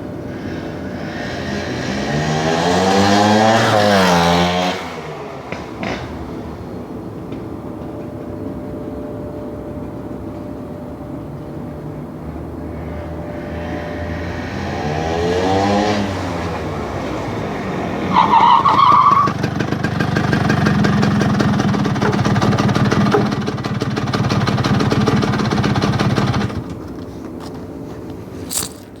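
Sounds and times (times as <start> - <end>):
scooter engine revving: 0.2 - 6.9, 12.7 - 26.9.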